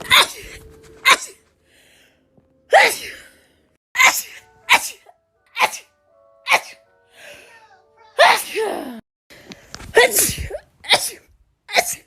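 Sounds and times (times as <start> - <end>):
person sneezing: 0.0 - 1.4, 9.9 - 12.0.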